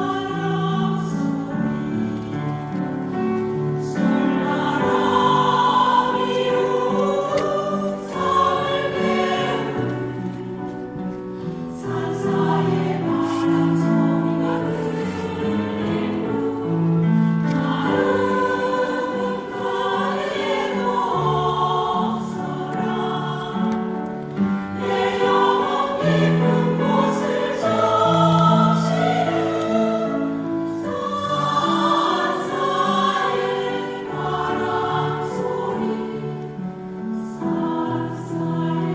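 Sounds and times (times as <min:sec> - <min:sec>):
mixed choir singing a hymn: 0:00.0 - 0:38.9.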